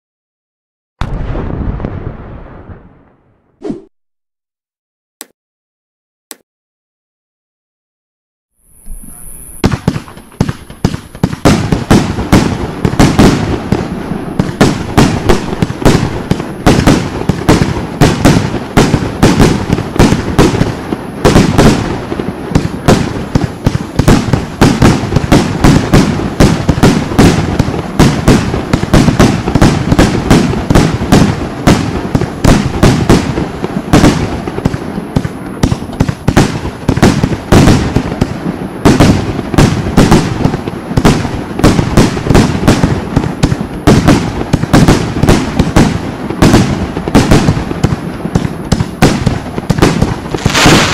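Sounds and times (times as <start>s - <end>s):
firework barrage of launches and bursts: 1.0s - 3.6s, 8.6s - 50.9s
firework fuse hiss: 8.6s - 11.5s, 50.2s - 50.9s.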